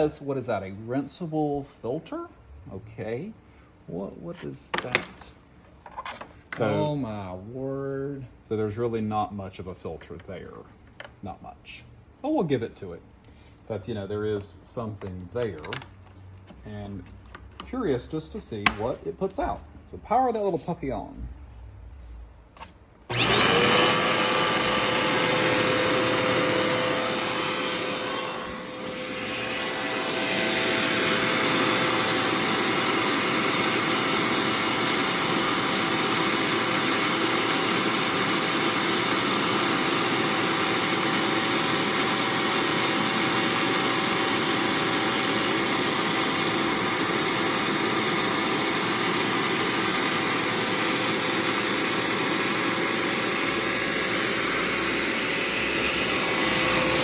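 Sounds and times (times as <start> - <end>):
vacuum cleaner motor whine: 23.1 - 57.0.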